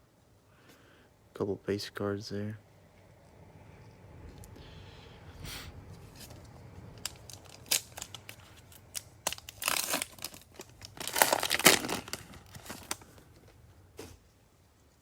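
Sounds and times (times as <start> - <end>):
plastic wrapper tearing and crinkling: 6.1 - 13.2.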